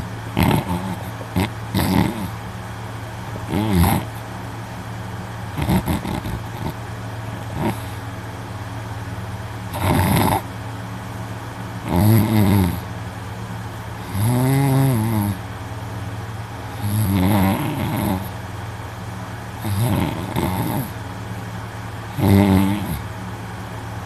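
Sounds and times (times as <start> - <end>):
man snoring loudly: 0.0 - 2.4, 3.4 - 4.2, 5.5 - 6.8, 7.4 - 8.0, 9.7 - 10.5, 11.8 - 12.9, 14.0 - 15.4, 16.7 - 18.4, 19.6 - 21.0, 22.1 - 23.0
steady low hum: 0.0 - 24.0.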